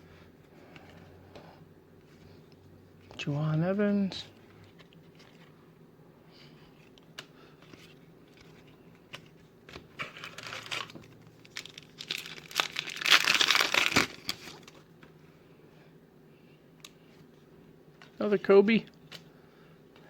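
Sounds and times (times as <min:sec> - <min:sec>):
plastic wrapper crinkling: 0:10.0 - 0:14.8.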